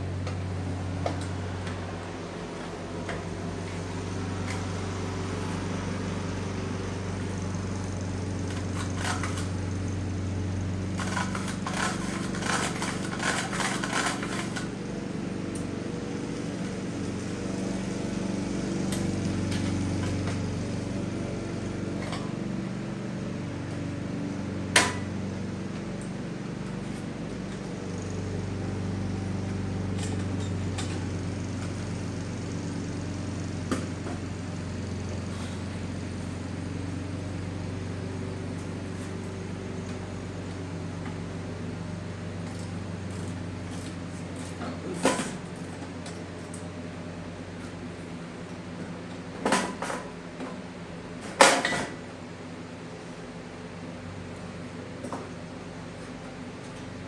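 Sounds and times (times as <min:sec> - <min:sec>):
low mechanical hum: 0:00.0 - 0:57.0.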